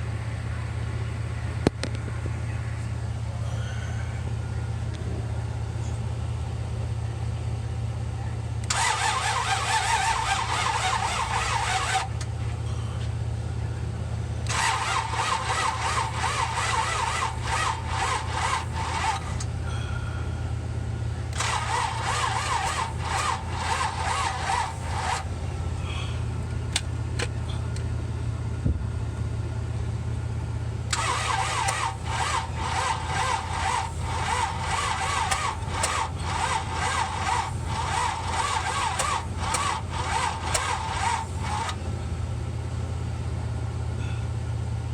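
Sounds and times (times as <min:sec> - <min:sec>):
steady low hum: 0:00.0 - 0:44.9
car starter cranking engine: 0:08.5 - 0:13.3, 0:14.3 - 0:27.9, 0:30.8 - 0:42.2.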